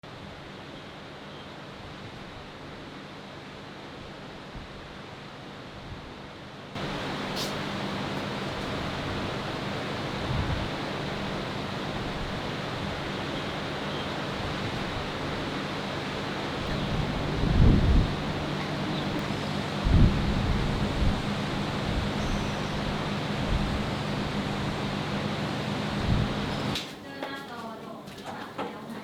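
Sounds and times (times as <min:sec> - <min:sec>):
wind: 0:00.0 - 0:29.0
sea surf: 0:06.8 - 0:26.8.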